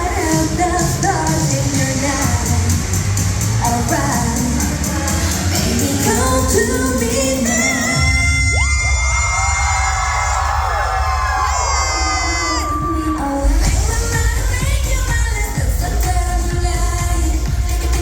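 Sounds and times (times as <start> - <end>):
woman singing: 0.0 - 3.0, 3.6 - 9.1, 12.0 - 18.0
pop song over sound system: 0.0 - 18.0.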